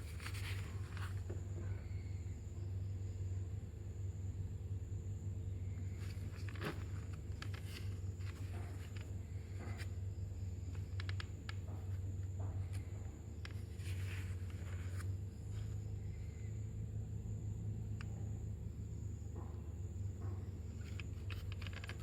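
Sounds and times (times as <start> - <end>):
steady low hum: 0.0 - 22.0
packaging clicks and rustles: 5.9 - 9.9, 20.8 - 22.0.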